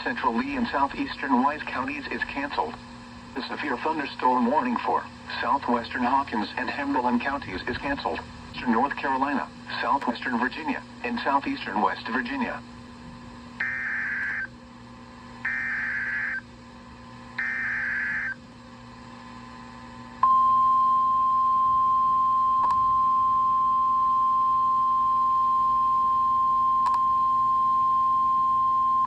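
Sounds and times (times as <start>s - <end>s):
steady warning alarm tone: 13.6s - 14.6s, 15.4s - 16.5s, 17.4s - 18.4s
digital data bursts: 15.5s - 16.4s, 17.4s - 18.4s.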